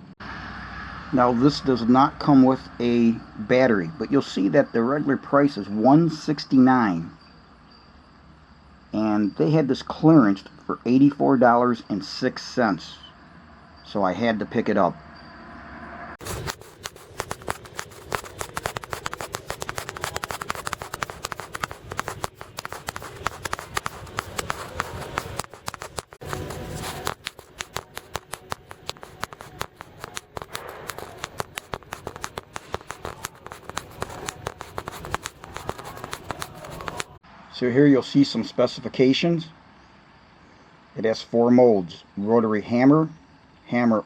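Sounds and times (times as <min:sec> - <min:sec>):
packaging rustling and crinkling: 0:16.2 - 0:37.2.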